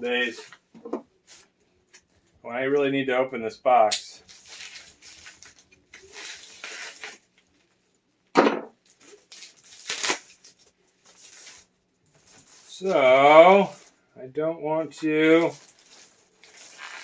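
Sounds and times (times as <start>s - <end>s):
packaging rustling and scraping: 4.2s - 7.8s, 8.8s - 14.0s, 14.9s - 17.0s.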